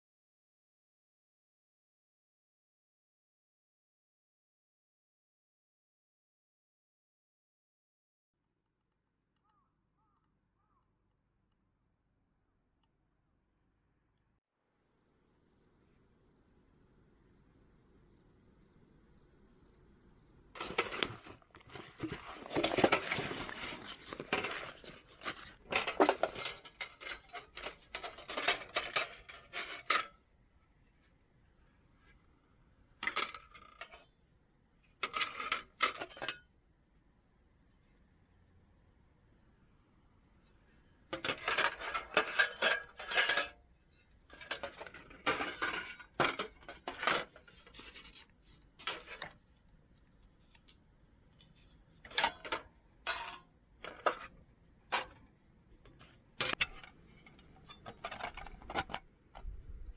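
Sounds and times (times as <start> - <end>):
metal cookware clinking and scraping: 20.6 - 30.1, 35.0 - 36.4, 41.2 - 49.3, 52.1 - 54.3, 56.0 - 59.0.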